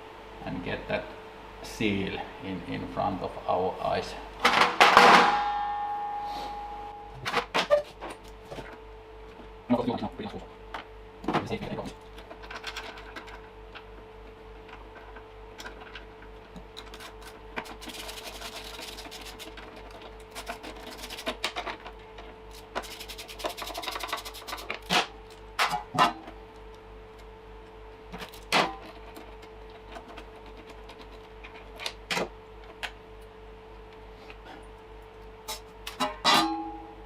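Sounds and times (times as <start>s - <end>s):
steady hum: 0.0s - 37.0s
hand tools scraping and rustling: 14.7s - 26.3s.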